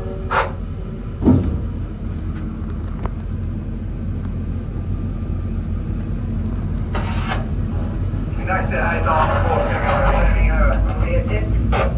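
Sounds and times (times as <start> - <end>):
diesel locomotive engine drone: 0.0 - 11.9.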